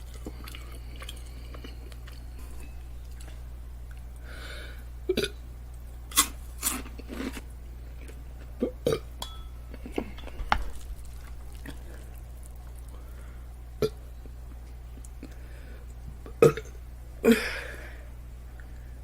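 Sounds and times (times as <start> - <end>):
woman chewing and lip smacking: 0.0 - 4.2
steady low hum: 0.0 - 19.0.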